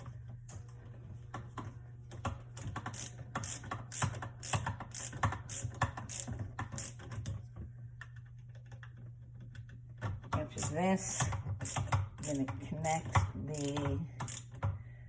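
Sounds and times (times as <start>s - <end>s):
screwdriver clicking on metal: 2.6s - 7.0s, 10.4s - 14.6s.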